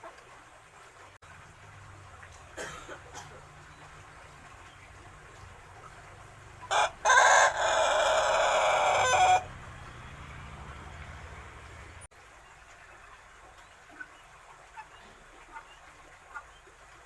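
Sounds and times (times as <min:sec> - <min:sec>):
young rooster crowing: 0:06.7 - 0:09.5.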